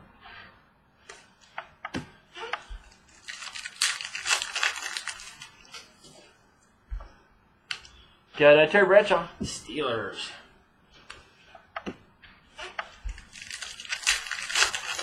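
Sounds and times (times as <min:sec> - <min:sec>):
packaging rustling and crinkling: 0:02.8 - 0:06.0, 0:13.1 - 0:15.0.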